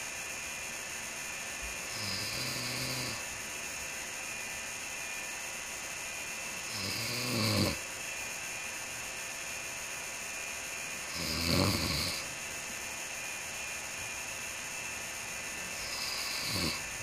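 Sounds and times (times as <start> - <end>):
steady hiss: 0.0 - 17.0
person snoring: 1.9 - 3.2, 6.7 - 7.8, 11.1 - 12.3, 15.7 - 16.9.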